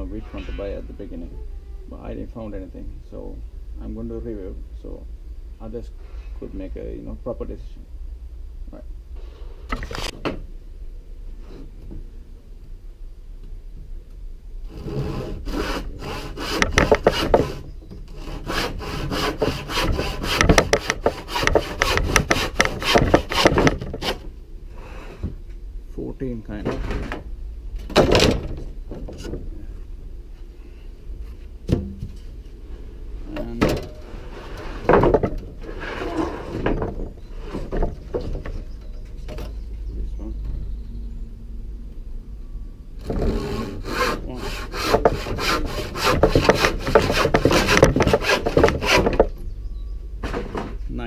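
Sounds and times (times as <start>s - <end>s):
hand saw cutting wood: 14.7s - 24.3s, 34.3s - 36.7s, 43.0s - 49.3s.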